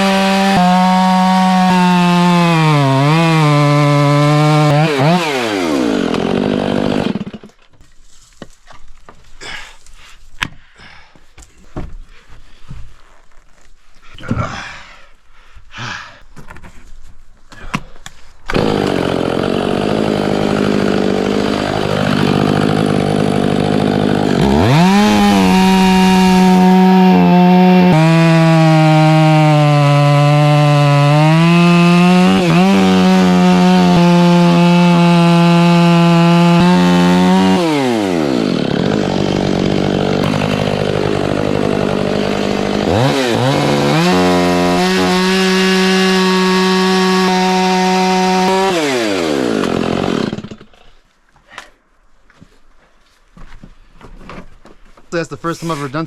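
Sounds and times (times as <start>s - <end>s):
chainsaw engine idling and revving: 0.0s - 7.5s, 18.5s - 50.7s
chainsaw cutting wood: 0.0s - 7.7s, 18.5s - 51.7s.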